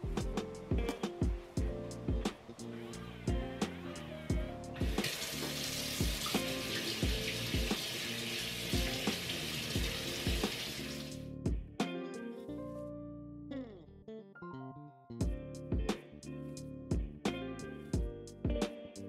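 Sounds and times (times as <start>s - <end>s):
background music with beat: 0.0s - 12.4s, 15.2s - 19.0s
water running from a tap: 4.8s - 11.2s.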